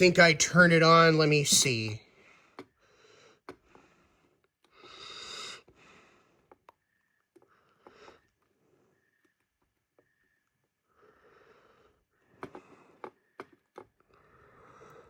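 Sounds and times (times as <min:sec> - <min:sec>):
breathing through the nose: 0:02.2 - 0:09.4, 0:10.8 - 0:13.3, 0:14.0 - 0:15.0.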